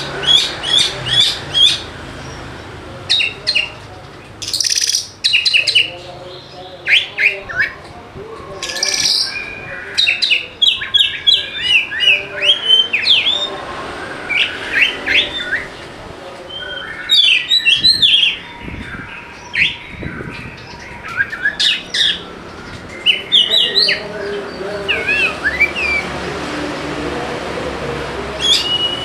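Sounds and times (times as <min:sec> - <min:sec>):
songbird chirping and whistling: 0:04.4 - 0:15.9, 0:16.5 - 0:26.2, 0:28.4 - 0:29.0.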